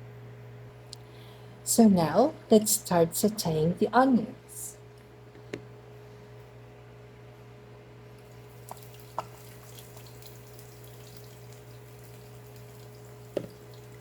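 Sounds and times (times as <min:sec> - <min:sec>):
steady low hum: 0:00.0 - 0:14.0
potatoes frying in oil: 0:08.2 - 0:14.0.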